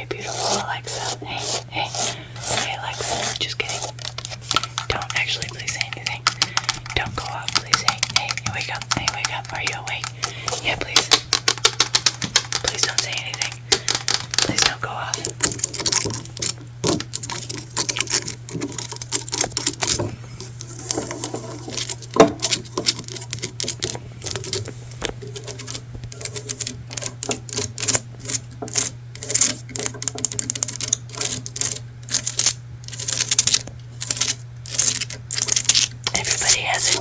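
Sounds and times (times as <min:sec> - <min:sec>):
steady low hum: 0:00.0 - 0:37.0
hand tapping on hard objects: 0:05.8 - 0:14.8.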